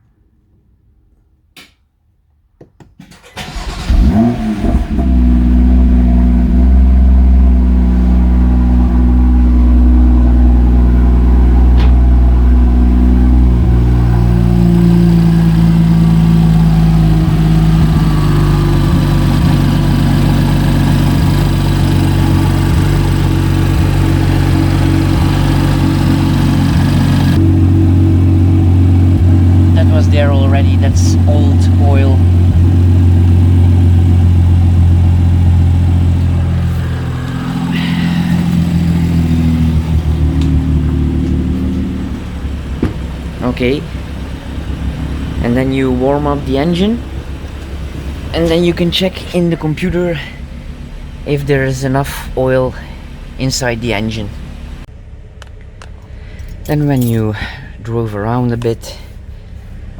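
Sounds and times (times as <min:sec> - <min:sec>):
engine cranking and starting: 0:03.0 - 0:05.5, 0:28.8 - 0:57.6
engine idling fast: 0:03.4 - 0:59.9.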